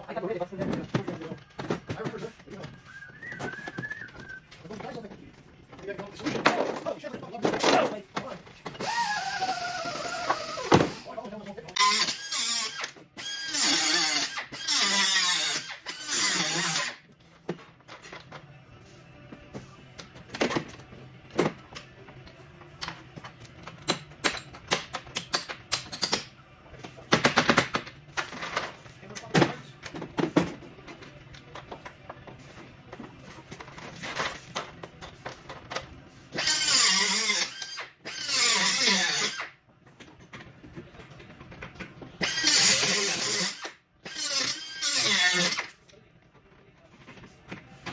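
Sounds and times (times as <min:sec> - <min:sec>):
handheld power tool motor: 0:08.8 - 0:10.8, 0:11.8 - 0:17.0, 0:36.4 - 0:39.5, 0:42.2 - 0:45.7.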